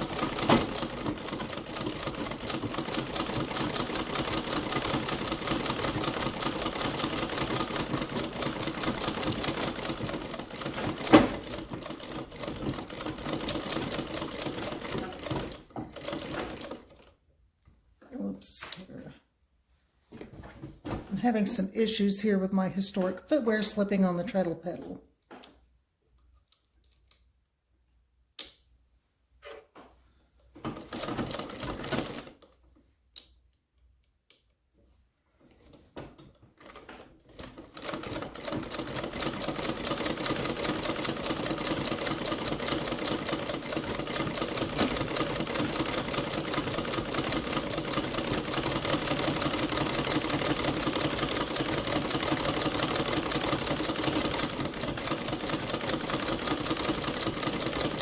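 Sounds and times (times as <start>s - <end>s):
treadle sewing machine clatter: 0.0s - 17.1s, 30.6s - 32.4s, 35.6s - 58.0s.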